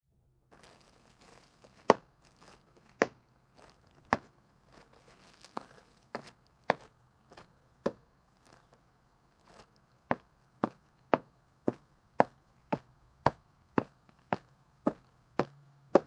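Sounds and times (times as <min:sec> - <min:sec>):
footsteps: 0:00.5 - 0:08.8
scuffing sounds: 0:00.5 - 0:15.1.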